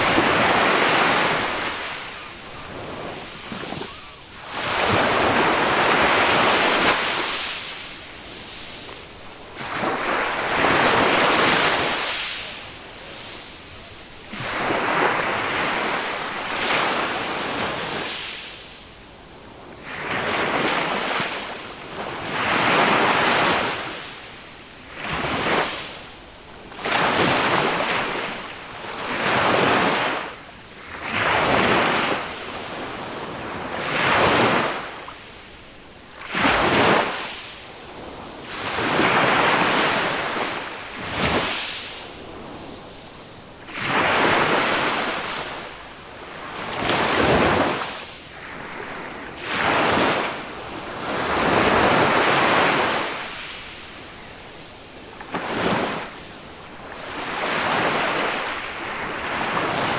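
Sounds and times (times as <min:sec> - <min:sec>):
small waves washing up a beach: 0:00.0 - 0:59.9.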